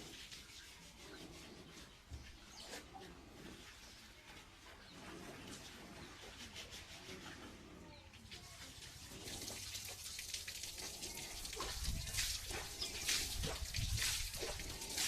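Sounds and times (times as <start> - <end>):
water running and splashing: 8.2 - 15.0.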